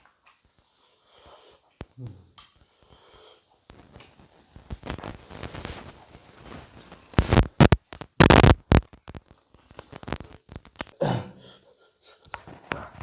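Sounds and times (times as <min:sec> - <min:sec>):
wet mouth clicks: 0:01.4 - 0:03.0.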